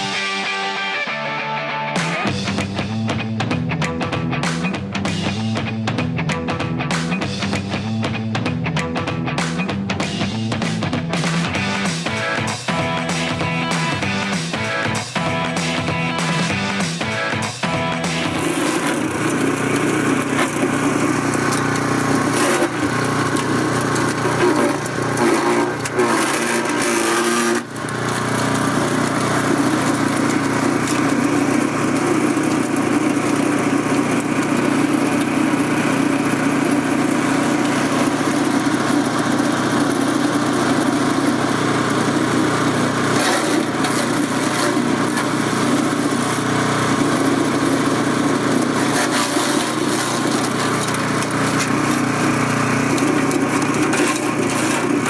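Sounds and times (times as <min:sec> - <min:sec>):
wood chipper running: 0:11.2 - 0:55.0.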